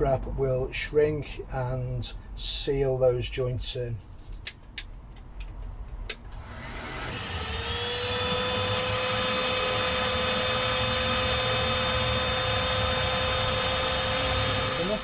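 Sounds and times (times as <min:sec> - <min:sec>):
heat gun fan whine: 0:06.3 - 0:15.0.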